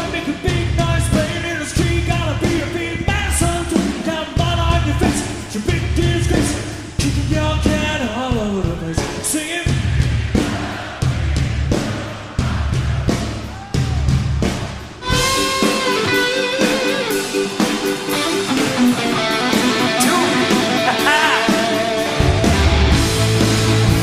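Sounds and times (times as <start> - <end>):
rock song: 0.0 - 24.0
person singing: 19.5 - 22.3.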